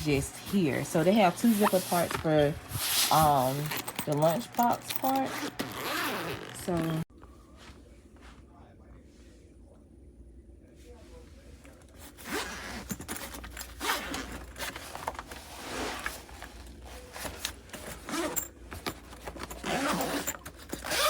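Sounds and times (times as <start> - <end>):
zippers being zipped: 0.0 - 7.1, 12.1 - 16.4, 17.0 - 18.5, 19.3 - 21.0.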